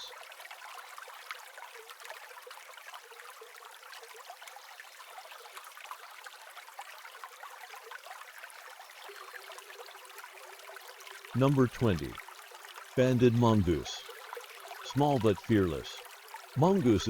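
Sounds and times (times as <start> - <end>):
small splashes and drips: 0.0 - 11.4
water trickling: 0.0 - 17.0.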